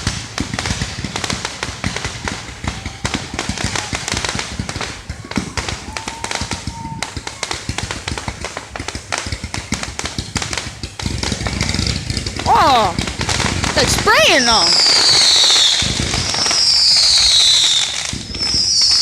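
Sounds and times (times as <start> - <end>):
fireworks popping and crackling: 0.0 - 19.0.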